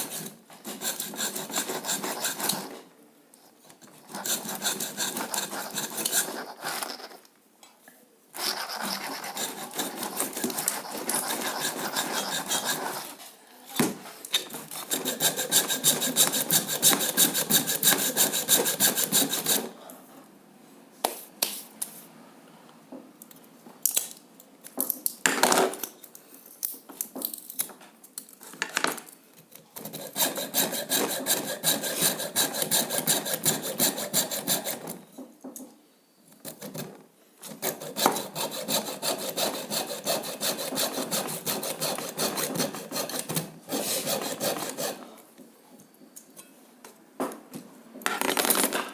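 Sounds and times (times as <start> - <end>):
hacksaw cutting metal coil: 0.0 - 2.7, 4.2 - 6.8, 8.4 - 13.1, 14.7 - 19.7, 29.8 - 35.0, 37.4 - 45.0.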